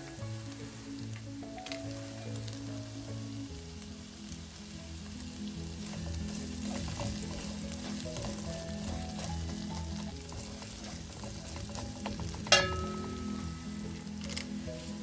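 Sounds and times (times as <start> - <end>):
soft background music: 0.0 - 15.0
vegetables sizzling in a pan: 0.0 - 15.0
stirring scrapes: 5.8 - 13.3.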